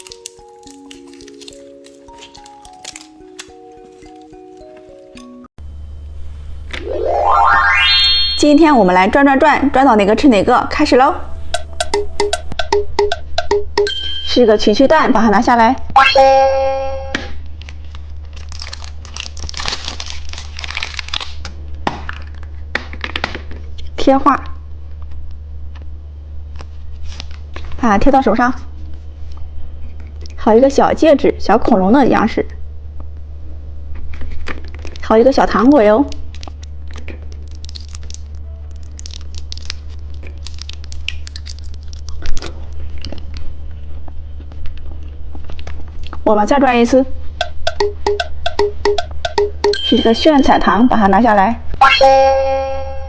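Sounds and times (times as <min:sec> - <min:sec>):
plastic wrapper crinkling: 0:00.0 - 0:05.3, 0:17.6 - 0:22.6, 0:36.3 - 0:42.3
steady low hum: 0:05.6 - 0:16.0.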